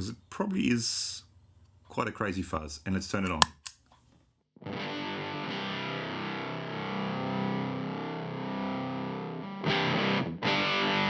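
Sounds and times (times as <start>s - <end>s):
fuzzy electric guitar chord: 4.7s - 11.0s.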